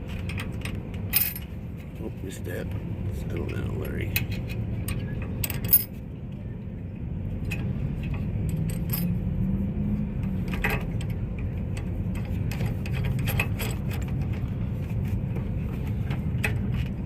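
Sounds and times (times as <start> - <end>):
metallic clinks and knocks: 0.3 - 1.6, 4.2 - 6.0, 7.5 - 9.2, 11.8 - 14.4.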